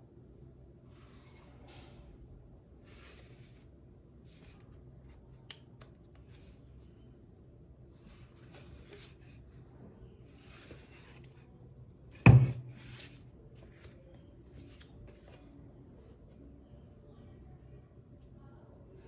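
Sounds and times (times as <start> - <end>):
parts rustling and scraping: 10.4 - 11.4, 12.2 - 14.0.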